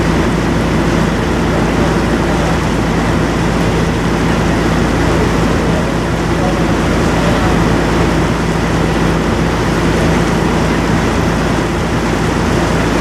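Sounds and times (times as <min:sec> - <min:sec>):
boat engine humming: 0:00.0 - 0:13.0.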